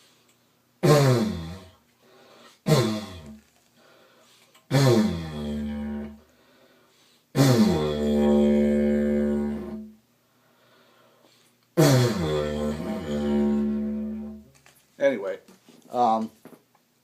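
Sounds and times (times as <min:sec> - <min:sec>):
didgeridoo drone: 0:04.7 - 0:06.2, 0:07.4 - 0:09.9, 0:11.8 - 0:14.5.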